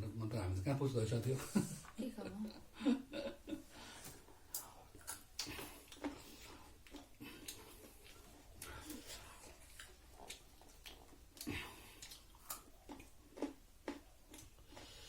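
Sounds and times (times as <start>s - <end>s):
close-up chewing: 4.2s - 15.0s.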